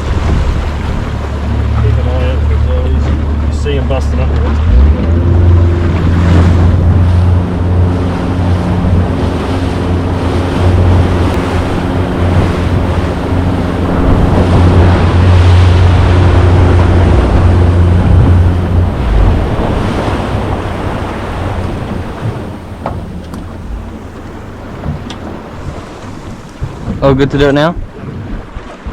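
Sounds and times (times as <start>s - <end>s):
boat engine droning: 0.0s - 28.9s
loud wind: 0.0s - 28.9s
rushing water: 0.0s - 28.9s.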